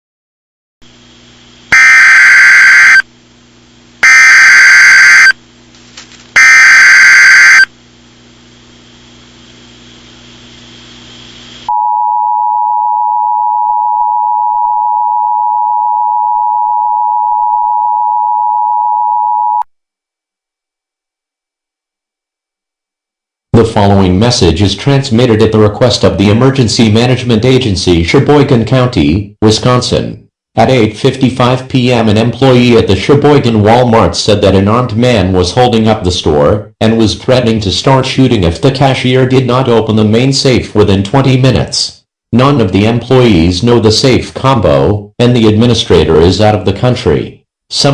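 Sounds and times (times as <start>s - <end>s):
low hum and hiss: 0.8s - 11.7s
data tone bursts: 1.7s - 3.0s, 4.0s - 5.4s, 6.4s - 7.7s
two-tone attention signal: 1.8s - 3.0s, 4.0s - 5.4s, 6.4s - 7.7s.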